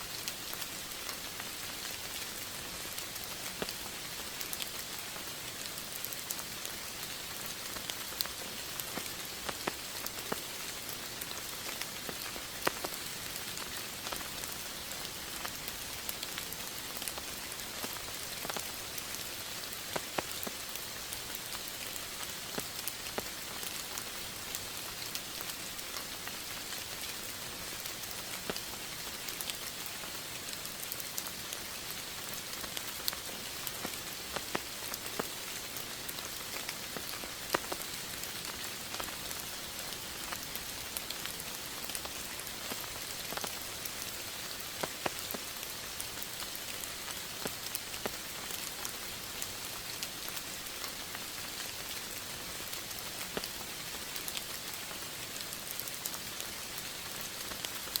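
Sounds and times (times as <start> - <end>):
steady rain with dripping drops: 0.0 - 58.0.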